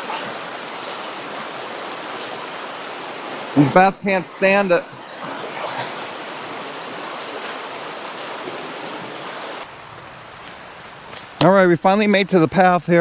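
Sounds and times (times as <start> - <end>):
creek water rushing: 0.0 - 9.6.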